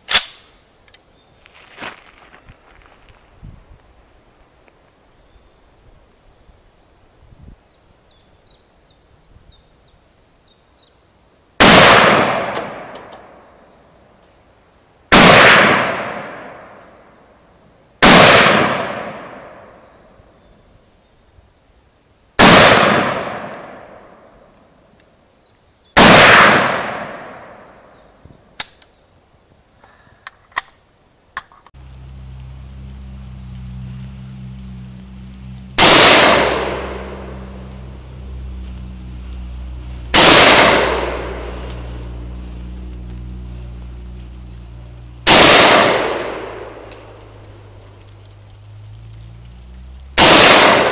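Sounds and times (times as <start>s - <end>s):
rifle shots with echo: 11.6s - 13.4s, 15.1s - 16.8s, 18.0s - 19.8s, 22.4s - 24.2s, 26.0s - 27.6s, 35.8s - 37.4s, 40.1s - 41.6s, 45.2s - 46.8s, 50.2s - 50.9s.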